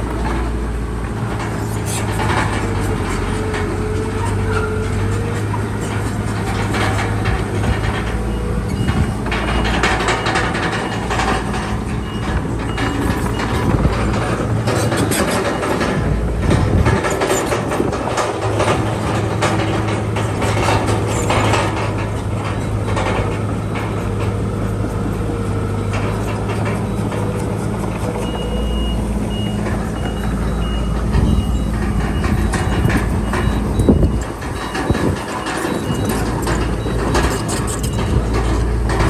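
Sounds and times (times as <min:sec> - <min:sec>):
bulldozer diesel engine running: 0:00.0 - 0:39.0
metal tracks clanking: 0:00.0 - 0:39.0
reversing alarm beeping: 0:06.9 - 0:17.9, 0:20.5 - 0:39.0.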